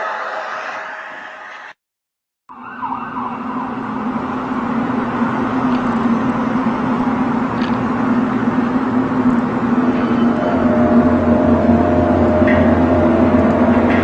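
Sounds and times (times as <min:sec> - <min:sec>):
rushing noise: 0:00.0 - 0:01.8, 0:03.8 - 0:14.0
loud droning hum: 0:03.5 - 0:14.0.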